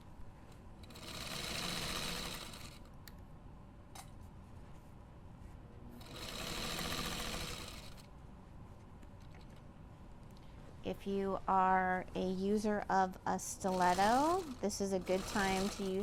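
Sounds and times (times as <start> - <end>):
sewing machine stitching: 0.8 - 2.8, 6.0 - 8.1, 13.6 - 16.0.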